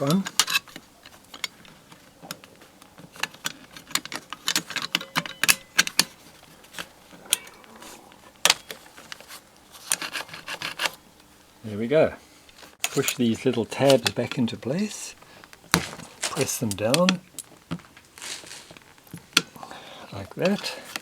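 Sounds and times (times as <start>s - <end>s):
metal lock parts clinking: 0.0s - 11.0s.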